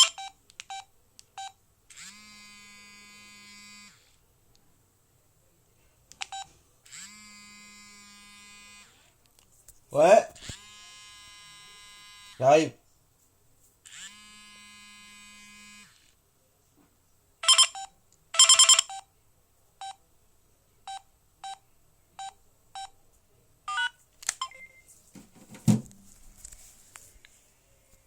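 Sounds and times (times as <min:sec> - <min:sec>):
phone electronic buzz: 0:00.0 - 0:00.3, 0:01.9 - 0:04.1, 0:06.3 - 0:09.0, 0:17.4 - 0:19.0
dull knock: 0:25.2 - 0:25.9.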